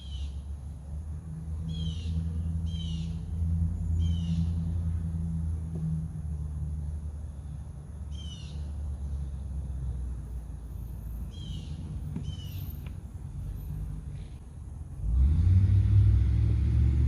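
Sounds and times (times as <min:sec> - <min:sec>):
bird calling: 0:01.7 - 0:04.6, 0:08.1 - 0:08.7, 0:11.3 - 0:12.9.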